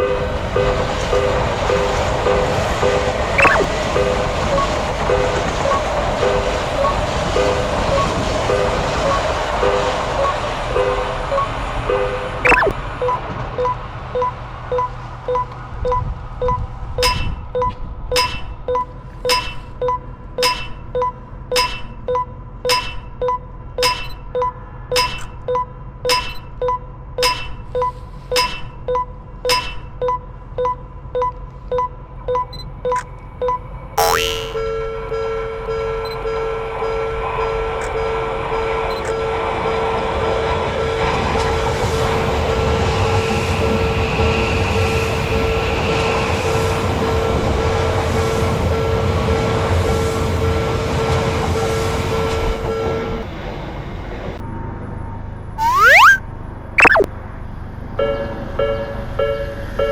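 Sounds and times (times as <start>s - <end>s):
railroad crossing bell ringing: 0.0s - 12.4s, 34.6s - 41.2s, 58.0s - 59.9s
passing train rumble: 0.0s - 17.0s, 34.6s - 54.4s
short falling whistle: 3.4s - 3.7s, 12.4s - 12.7s, 55.6s - 56.2s, 56.8s - 57.1s.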